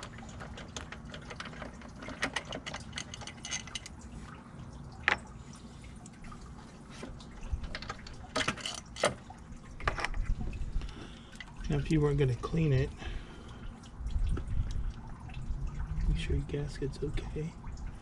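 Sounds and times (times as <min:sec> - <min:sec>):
metal tools clicking and tapping: 0:00.0 - 0:04.0
low steady hum: 0:00.0 - 0:18.0.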